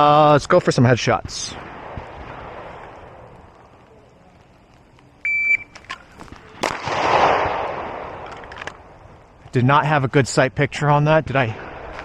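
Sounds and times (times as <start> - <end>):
pistol shot with echo: 6.2 - 8.5.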